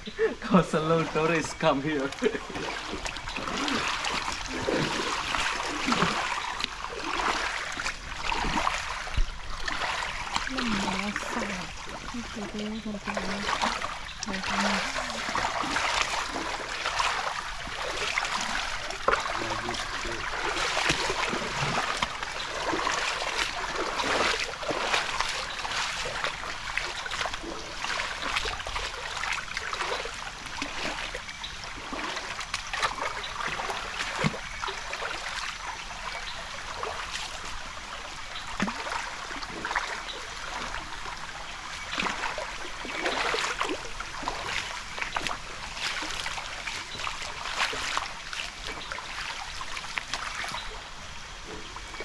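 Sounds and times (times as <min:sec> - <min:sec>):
waterfall rushing and splashing: 0:00.0 - 0:31.0.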